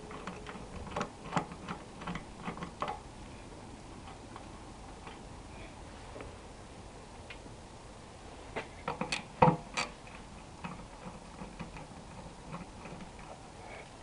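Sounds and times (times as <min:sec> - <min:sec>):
metal clicks of tool and bolts: 0:08.9 - 0:11.9.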